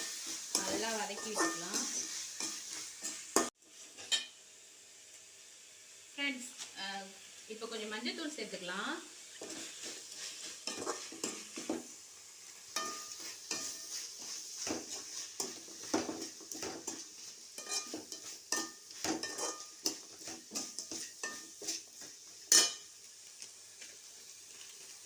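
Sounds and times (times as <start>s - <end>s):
spoon scraping and knocking pan: 0.0s - 4.4s, 9.4s - 12.0s, 12.7s - 22.9s
meat sizzling in oil: 0.0s - 25.0s.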